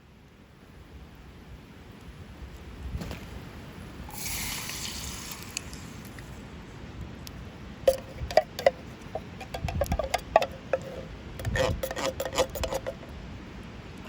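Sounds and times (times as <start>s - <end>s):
liquid poured into metal tin: 4.1s - 6.2s
metal utensil clinking on tin: 7.9s - 13.1s.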